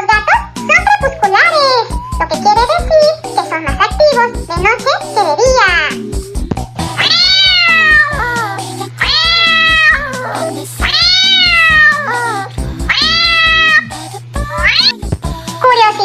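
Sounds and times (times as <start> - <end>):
background music: 0.0 - 16.0
cat meowing: 7.0 - 8.4, 9.0 - 15.0.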